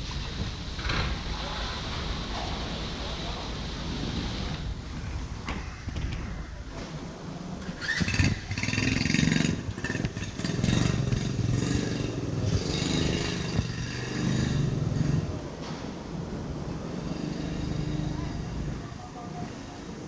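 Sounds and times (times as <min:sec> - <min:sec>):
small engine running: 0:07.6 - 0:15.4, 0:16.7 - 0:20.0.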